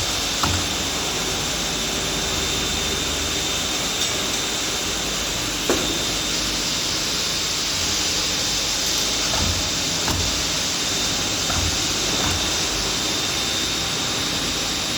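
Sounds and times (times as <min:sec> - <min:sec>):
machine hiss with high whine: 0:00.0 - 0:14.9
dull thumps: 0:09.1 - 0:13.1.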